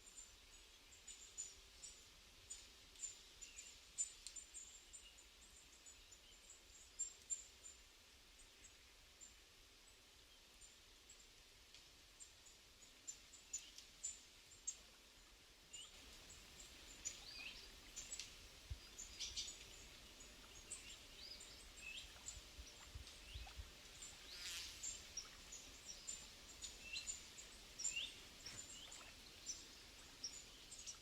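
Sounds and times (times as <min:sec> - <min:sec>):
small birds chirping: 0:15.7 - 0:31.0.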